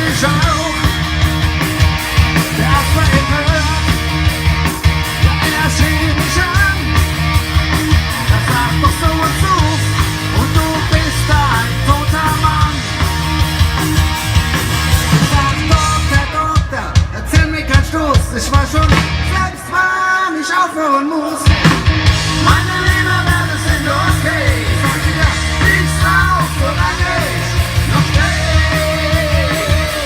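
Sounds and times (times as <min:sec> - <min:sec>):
live rock band playing: 0:00.0 - 0:30.0
person singing: 0:22.3 - 0:30.0.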